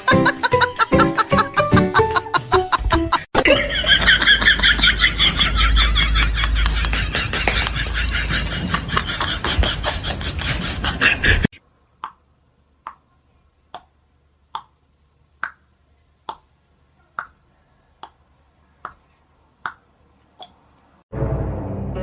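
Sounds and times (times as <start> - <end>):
sharp snaps: 14.5 - 14.8, 15.4 - 16.5, 17.1 - 17.4, 18.0 - 18.2, 18.8 - 19.0, 19.6 - 20.9.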